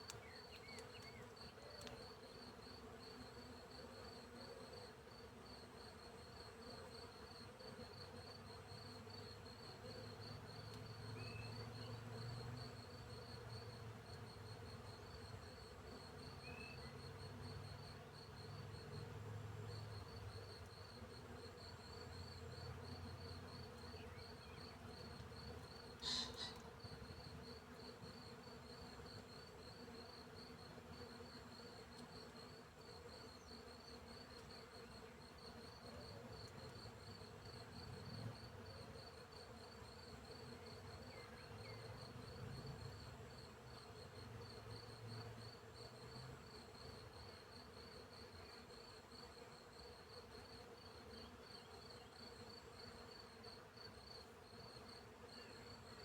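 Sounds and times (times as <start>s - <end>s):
cricket chirping: 7.3s - 19.0s, 19.7s - 27.4s, 35.2s - 56.0s.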